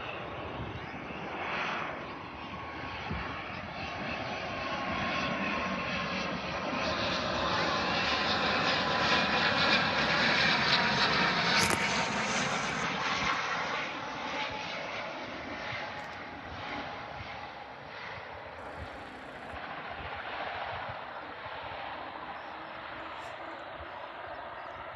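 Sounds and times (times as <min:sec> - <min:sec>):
turboprop airliner passing: 0:00.0 - 0:24.9
high engine whine: 0:07.9 - 0:24.9.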